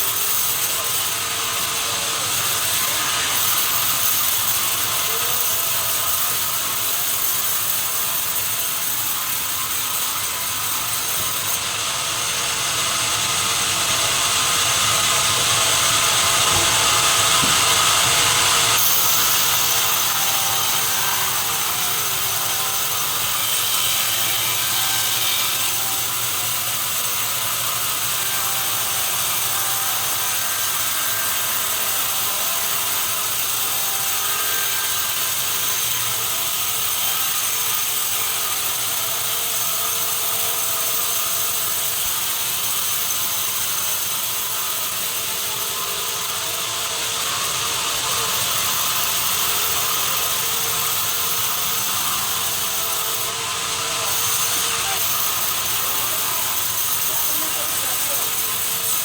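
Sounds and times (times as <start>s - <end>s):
running machinery: 0.0s - 59.0s
saw blade cutting log: 0.0s - 59.0s.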